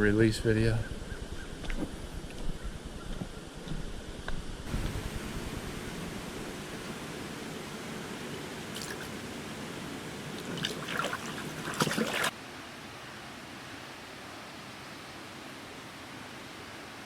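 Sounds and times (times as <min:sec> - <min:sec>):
water splashing: 0:04.7 - 0:12.4
flowing water rushing: 0:04.7 - 0:17.0.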